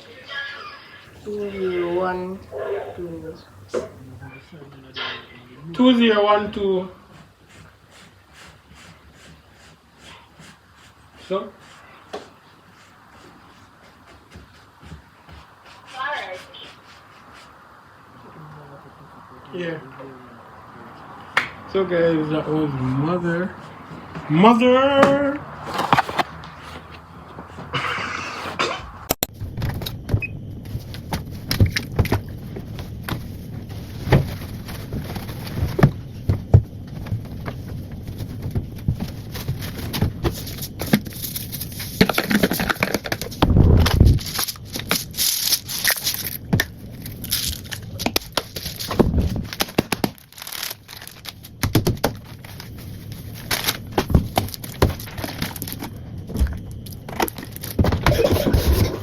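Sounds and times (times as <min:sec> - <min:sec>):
rustling and crackling: 0:22.8 - 0:28.6, 0:29.3 - 0:59.0
knocks and thuds: 0:57.8 - 0:59.0.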